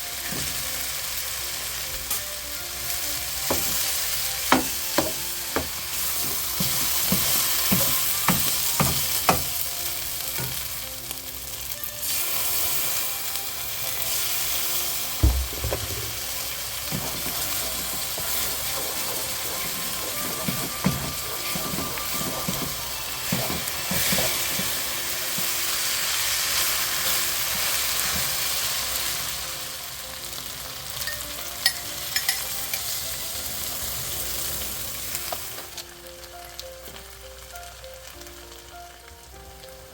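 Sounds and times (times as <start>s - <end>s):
food sizzling in a frying pan: 0.0s - 39.9s
dull thump: 15.2s - 16.2s
spatula scraping a pan: 16.2s - 25.5s.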